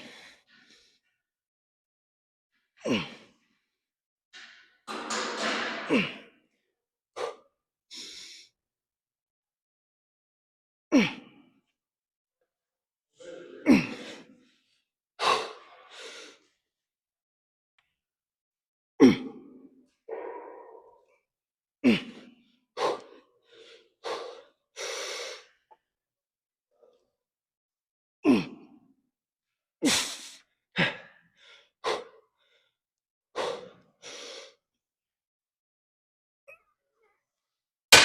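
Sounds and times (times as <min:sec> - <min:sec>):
man grunting: 0:02.8 - 0:03.2, 0:10.9 - 0:11.2, 0:13.2 - 0:14.3, 0:19.0 - 0:19.3, 0:21.8 - 0:22.2, 0:28.2 - 0:28.7
man breathing hard: 0:07.2 - 0:08.5, 0:22.8 - 0:25.6, 0:33.4 - 0:34.6.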